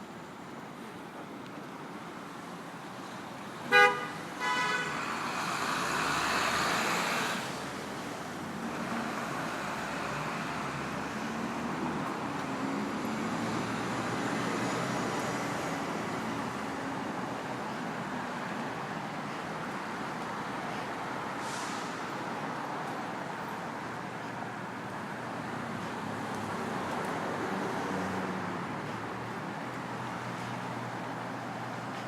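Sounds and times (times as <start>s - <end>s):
city traffic noise: 0.0s - 32.0s
car horn honking: 3.7s - 5.0s
vehicle passing: 4.8s - 16.5s.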